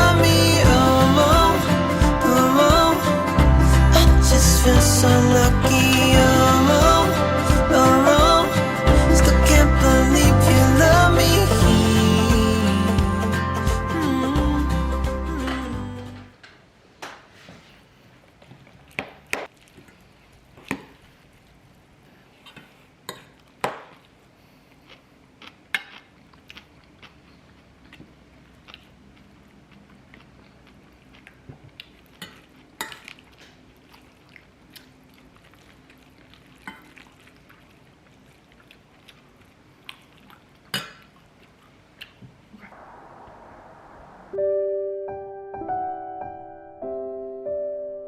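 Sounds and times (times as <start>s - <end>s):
faint steady hum: 33.7s - 44.6s.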